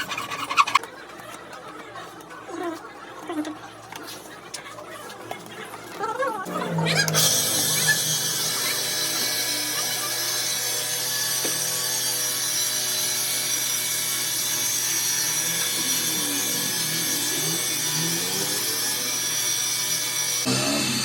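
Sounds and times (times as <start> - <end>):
power tool grinding: 6.4 - 21.0.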